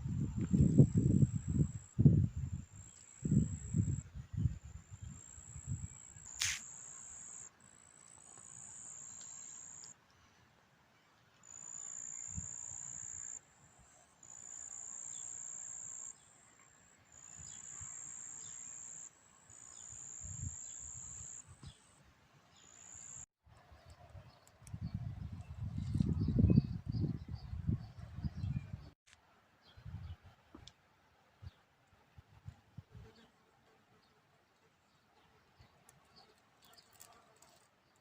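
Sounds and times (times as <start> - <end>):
sharp click: 6.4 - 6.7.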